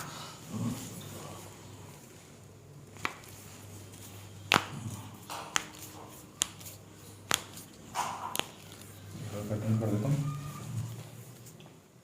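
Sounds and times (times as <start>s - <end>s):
faint steady hum: 0.0s - 12.0s.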